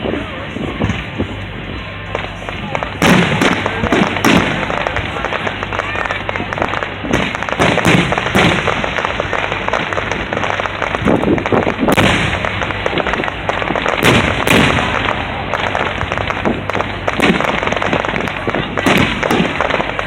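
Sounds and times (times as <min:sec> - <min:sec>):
fireworks bursting: 0:00.0 - 0:20.0.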